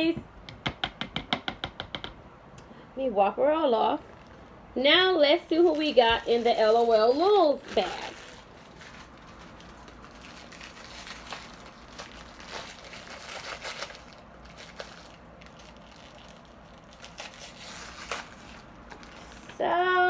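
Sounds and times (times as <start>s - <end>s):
plastic wrapper crinkling: 5.3s - 19.5s.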